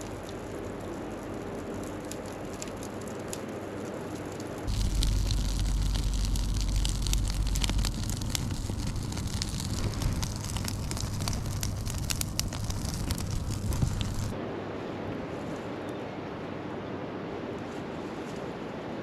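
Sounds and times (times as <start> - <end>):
campfire crackling and popping: 0.0 - 14.4
wind rumble on microphone: 4.6 - 19.0.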